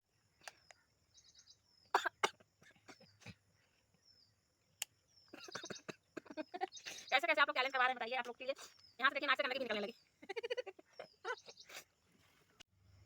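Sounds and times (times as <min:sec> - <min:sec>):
birds chirping faintly: 0:00.0 - 0:13.0.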